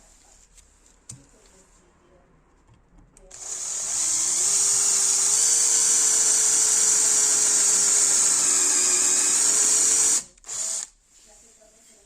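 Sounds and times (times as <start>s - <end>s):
electric drill whining: 3.3s - 10.9s.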